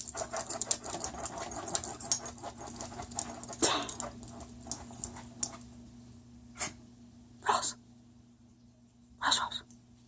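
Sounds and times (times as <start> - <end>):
dog clicking and snuffling: 0.0 - 5.7.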